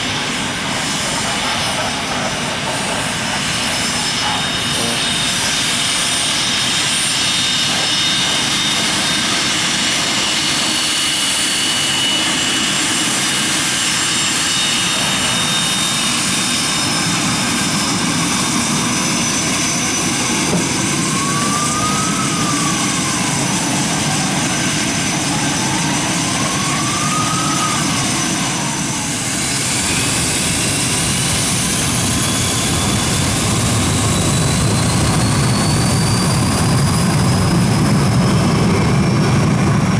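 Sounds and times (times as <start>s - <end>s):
high engine whine climbing: 0.0s - 39.9s
jet engines running: 0.0s - 39.9s.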